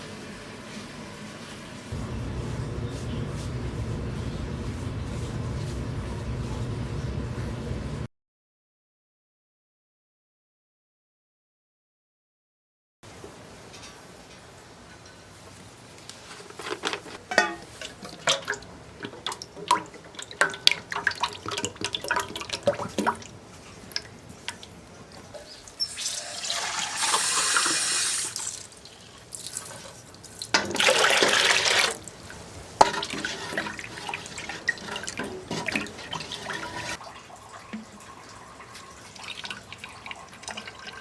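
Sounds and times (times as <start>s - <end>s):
knocks and clinks of handling: 16.5s - 18.5s
water pouring: 16.6s - 41.0s.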